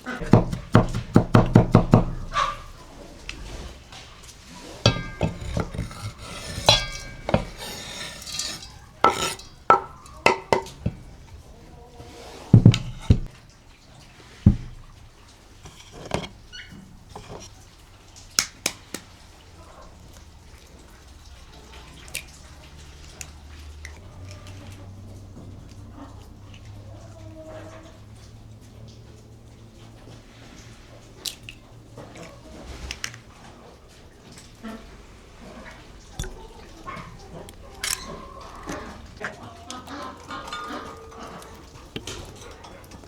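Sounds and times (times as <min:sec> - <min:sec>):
utensils and pots clinking: 0:00.0 - 0:13.4, 0:14.3 - 0:17.6, 0:35.4 - 0:43.0.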